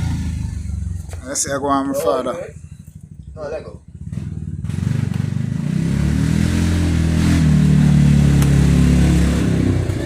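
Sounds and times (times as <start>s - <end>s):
vehicle engine accelerating past: 4.0s - 10.0s.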